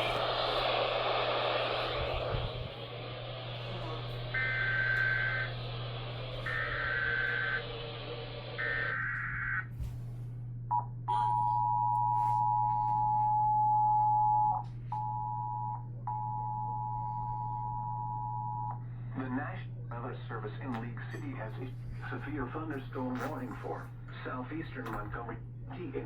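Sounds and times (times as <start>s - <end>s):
hiss: 0.0s - 8.8s
warbling digital data bursts: 0.0s - 9.7s.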